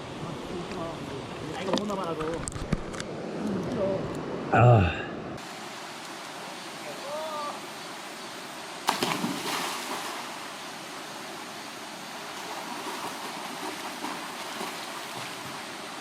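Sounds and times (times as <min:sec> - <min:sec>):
stream rushing over rocks: 0:04.6 - 0:16.0.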